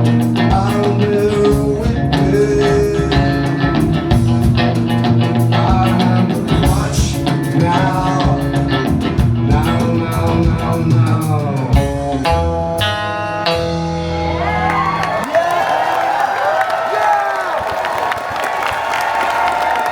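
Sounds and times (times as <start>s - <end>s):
live rock band playing: 0.0s - 15.2s
crowd cheering and whistling: 14.0s - 19.9s.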